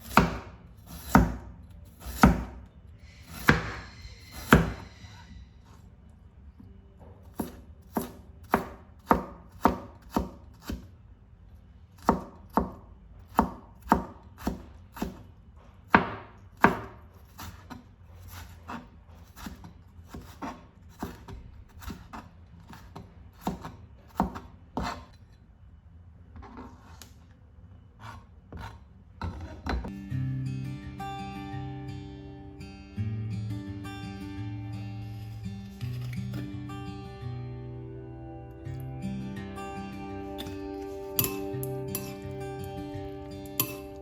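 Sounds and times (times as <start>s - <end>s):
knife chopping on cutting board: 0.0s - 2.6s, 3.3s - 4.8s, 7.3s - 10.9s, 12.0s - 15.3s, 15.9s - 25.1s.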